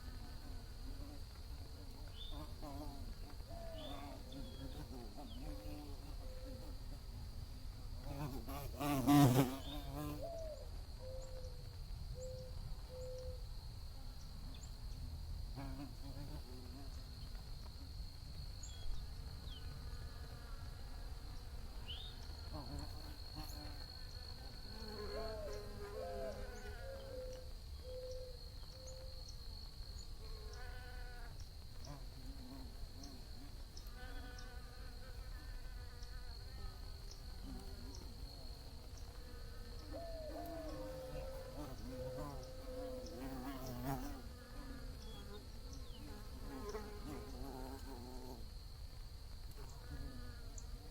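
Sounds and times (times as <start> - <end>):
bees buzzing past: 8.0 - 10.3, 30.2 - 48.7.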